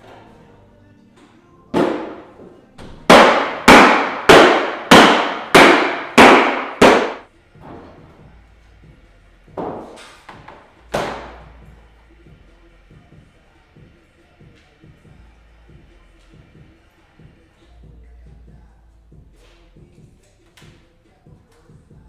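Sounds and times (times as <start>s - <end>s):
hammer striking sheet metal: 1.8s - 2.3s, 3.0s - 7.3s.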